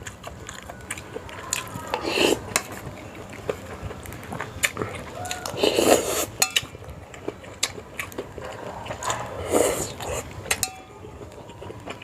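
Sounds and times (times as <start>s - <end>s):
utensils clinking against bowl: 5.6s - 6.7s, 9.5s - 10.9s.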